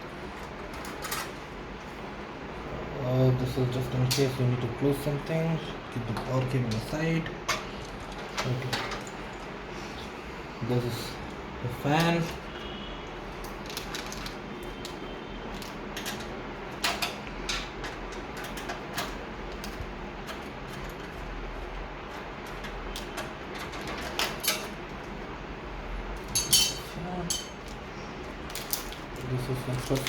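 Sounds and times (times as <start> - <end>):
steady low hum: 0.0 - 13.6
computer parts clicking and rattling: 0.3 - 1.5, 11.0 - 12.5, 13.2 - 25.3, 26.2 - 30.0.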